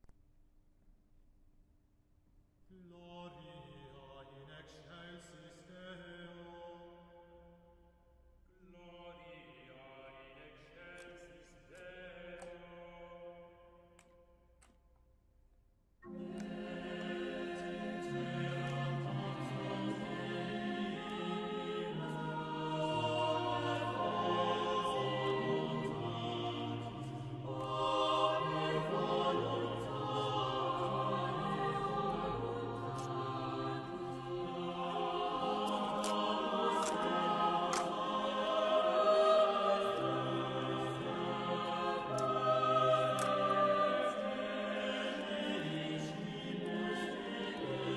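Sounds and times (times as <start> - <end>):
choir-like music with held chords: 8.6 - 14.2, 16.0 - 47.9.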